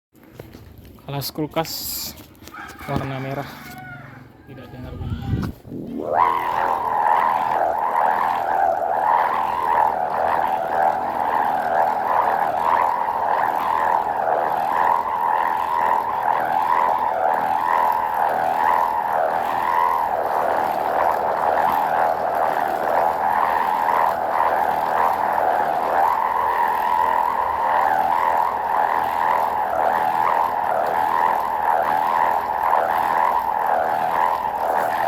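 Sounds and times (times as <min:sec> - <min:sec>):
kite humming drone: 0:01.8 - 0:35.0.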